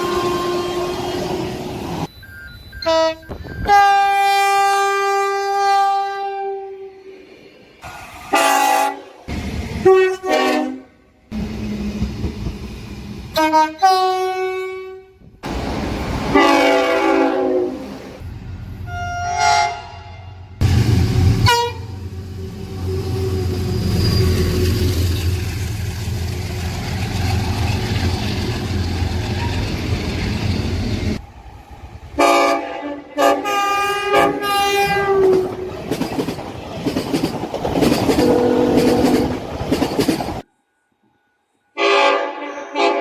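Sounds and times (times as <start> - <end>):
train horn chord: 0.0 - 1.0, 8.2 - 9.2, 9.8 - 11.1, 16.3 - 18.0, 18.9 - 23.4, 32.2 - 35.2, 38.2 - 39.3, 41.7 - 43.0
passing train rumble: 0.0 - 2.1, 2.9 - 40.5.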